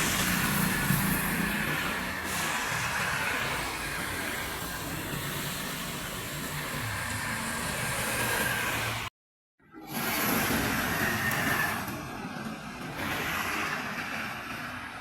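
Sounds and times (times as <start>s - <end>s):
highway traffic passing: 0.0s - 9.1s.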